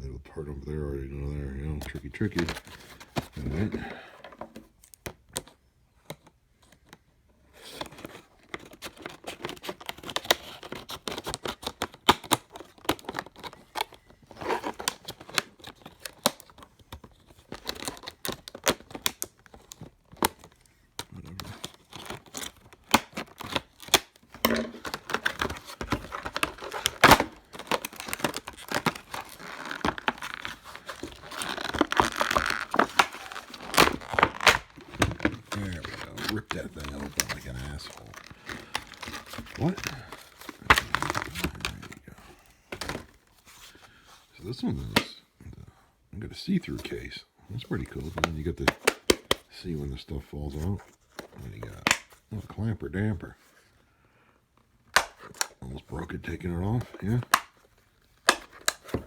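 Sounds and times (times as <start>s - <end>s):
packaging tearing and crinkling: 1.8s - 4.1s, 7.6s - 43.4s, 55.0s - 59.0s.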